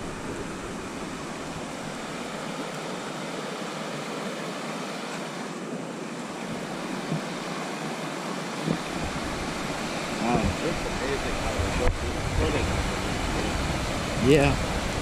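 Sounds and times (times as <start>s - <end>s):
river water rushing: 0.0s - 15.0s.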